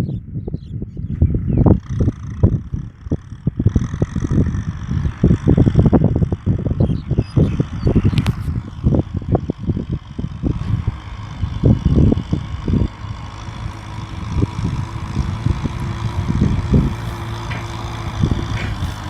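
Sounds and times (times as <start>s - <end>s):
tractor diesel engine running: 1.0s - 19.0s
low thumps: 13.8s - 19.0s.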